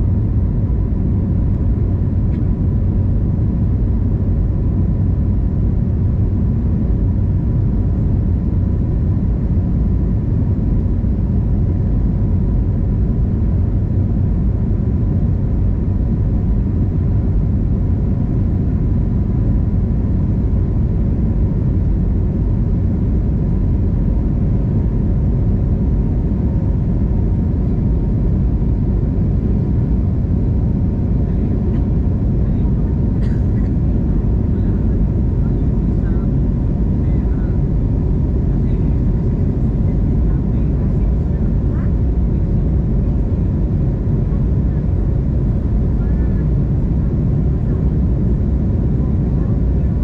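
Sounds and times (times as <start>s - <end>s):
airliner cabin rumble: 0.0s - 50.0s
faint steady hum: 0.0s - 50.0s.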